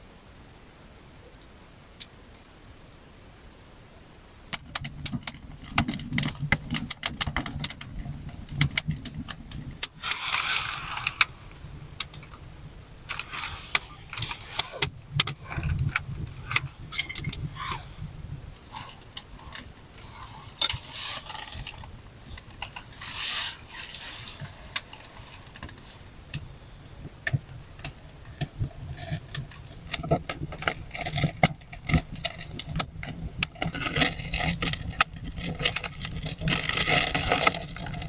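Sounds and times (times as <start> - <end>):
short rushing hiss: 10.0 - 11.5.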